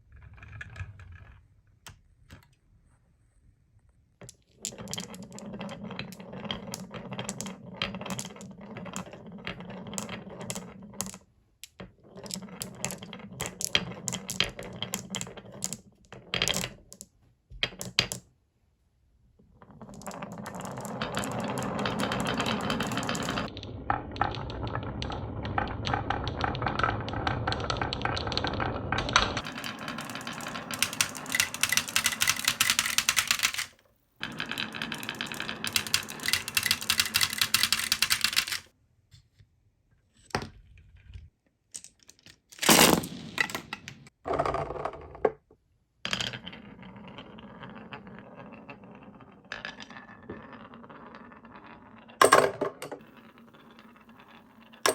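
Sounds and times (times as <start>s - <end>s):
marbles rattling on wooden run: 4.2s - 15.8s, 19.7s - 38.7s, 47.3s - 54.9s.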